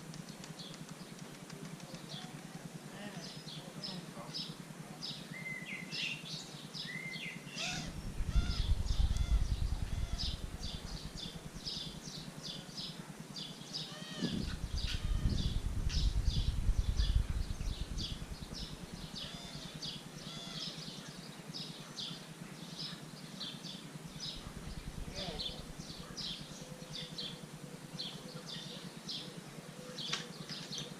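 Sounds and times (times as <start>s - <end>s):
small birds chirping: 0.1s - 30.9s
low rumbling on microphone: 7.8s - 12.6s, 14.2s - 20.1s, 24.1s - 27.0s.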